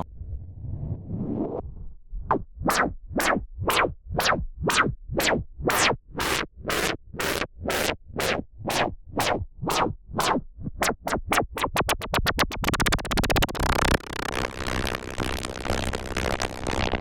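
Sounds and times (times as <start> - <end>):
pulses with falling filter sweeps: 2.6 - 17.0
electronic music build-up: 5.7 - 17.0.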